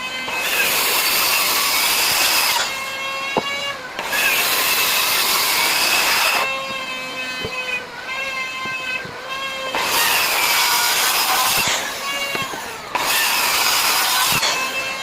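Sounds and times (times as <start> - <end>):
power tool whine: 0.0 - 15.0
power tool hissing: 0.3 - 6.8, 9.7 - 15.0.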